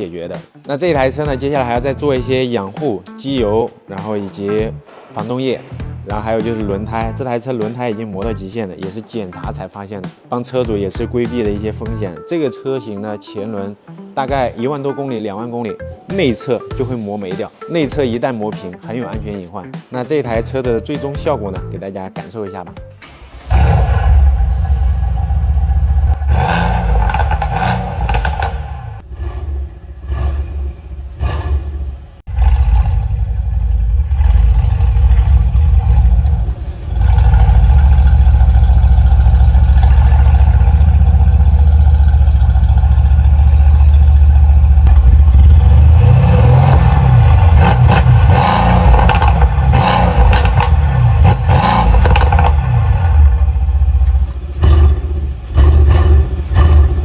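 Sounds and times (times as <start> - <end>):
car engine revving: 4.6 - 7.3, 22.9 - 57.0
engine throttle blips: 22.8 - 57.0.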